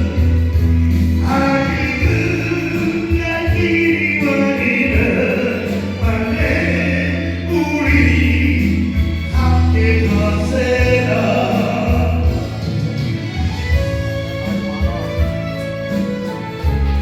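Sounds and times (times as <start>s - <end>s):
slow song with singing: 0.0s - 17.0s.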